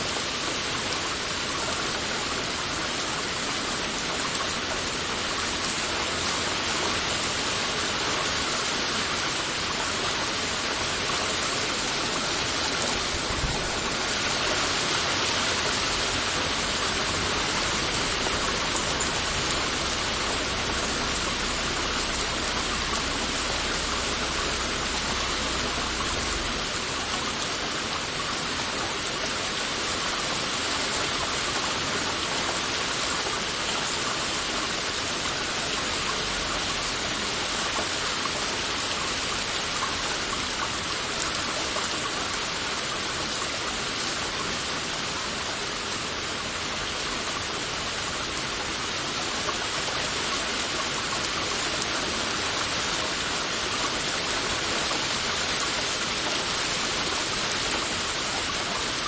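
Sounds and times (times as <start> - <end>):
heavy rain falling: 0.0 - 59.0
low rumble: 17.4 - 27.2.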